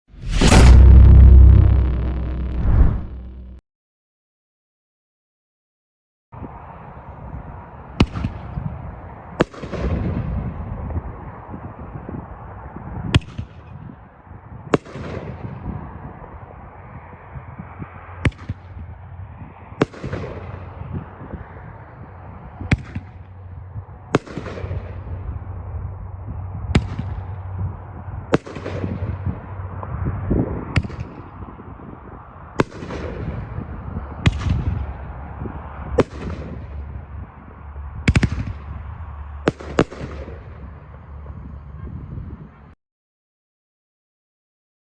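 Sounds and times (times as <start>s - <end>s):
low rumble: 0.0s - 3.6s
fireworks bangs: 0.1s - 3.6s.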